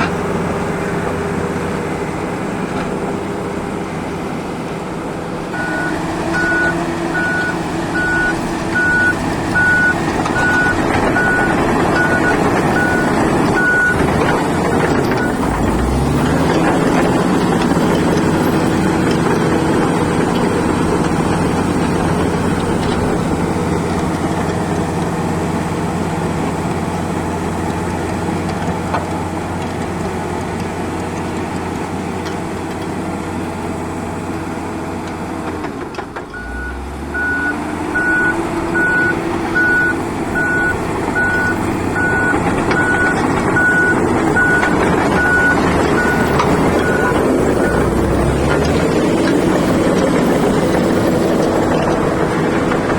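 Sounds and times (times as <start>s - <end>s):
diesel truck engine: 0.0s - 52.9s
backup alarm beeping: 5.6s - 14.1s, 36.4s - 48.1s.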